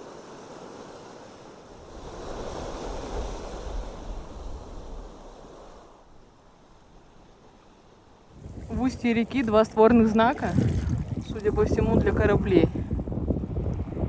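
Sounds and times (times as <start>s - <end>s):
sea waves washing on shore: 0.0s - 13.5s
wind rumble on microphone: 1.7s - 7.4s, 8.3s - 14.0s.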